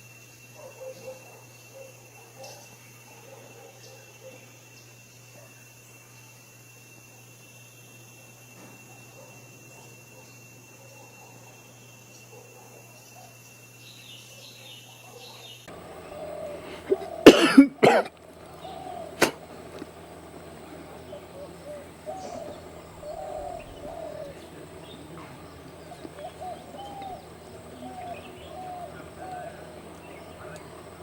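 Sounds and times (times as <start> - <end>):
birds chirping: 13.8 - 31.0
low bird calls rising and falling: 18.4 - 31.0.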